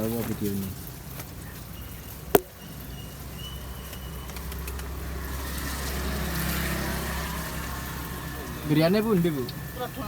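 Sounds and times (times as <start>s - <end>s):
vehicle passing by: 4.1s - 10.0s.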